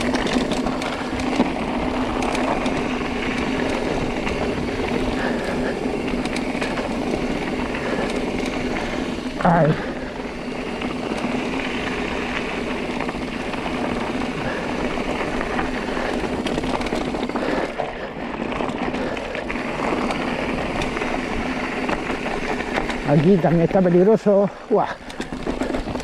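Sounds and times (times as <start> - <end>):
bike knocks and rattles: 0.0 - 9.8, 10.4 - 17.7, 24.8 - 26.0
bike tyres on dirt trail: 0.0 - 26.0.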